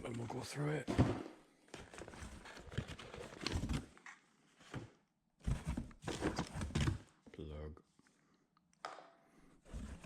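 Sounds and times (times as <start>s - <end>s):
packaging rustling: 1.7s - 3.9s.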